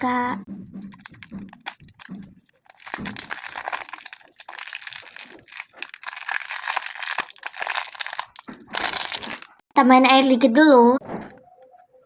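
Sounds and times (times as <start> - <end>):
plastic packaging crinkling: 0.8 - 9.6.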